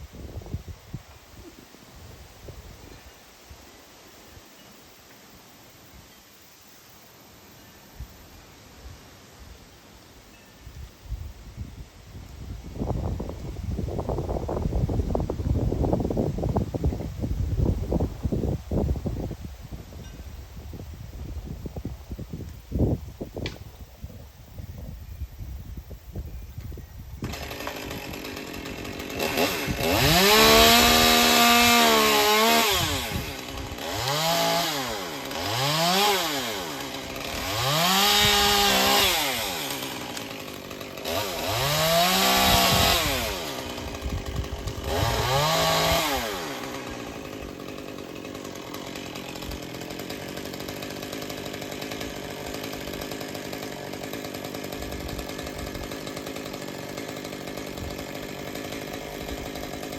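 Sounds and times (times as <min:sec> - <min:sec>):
chainsaw revving: 0:27.2 - 0:59.9.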